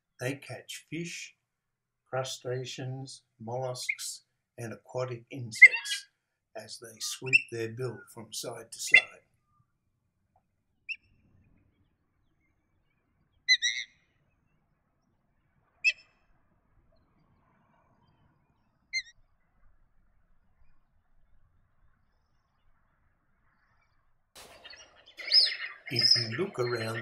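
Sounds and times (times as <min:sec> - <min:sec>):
bird short sharp high calls: 0:05.5 - 0:06.1, 0:07.0 - 0:09.6, 0:13.4 - 0:14.1, 0:24.4 - 0:27.0.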